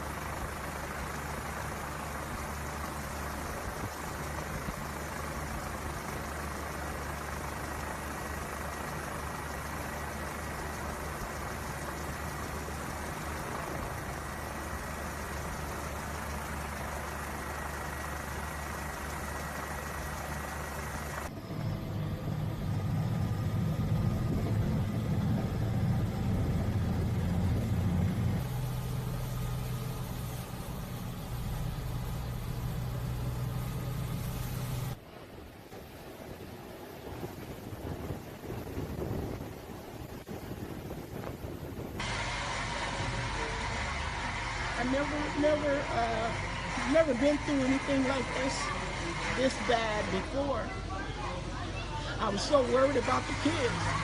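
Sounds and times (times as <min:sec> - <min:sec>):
vehicle engine running: 0:00.0 - 0:54.0.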